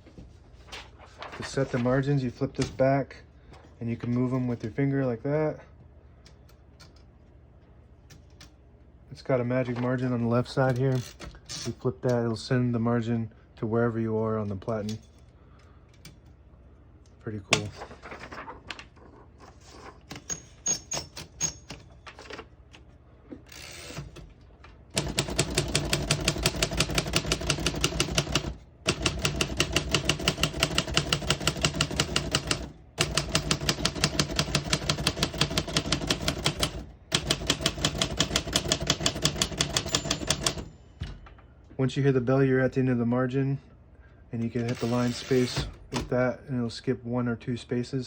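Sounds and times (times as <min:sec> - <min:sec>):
typewriter keystrokes: 0:24.9 - 0:40.7
typewriter margin bell ringing: 0:37.7 - 0:40.7, 0:44.7 - 0:45.6.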